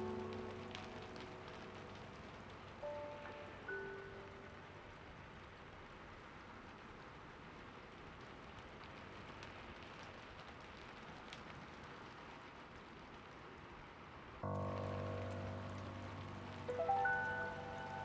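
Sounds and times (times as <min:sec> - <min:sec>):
music with sustained tones: 0:00.0 - 0:05.4, 0:14.4 - 0:18.0
steady rain falling: 0:00.0 - 0:18.0.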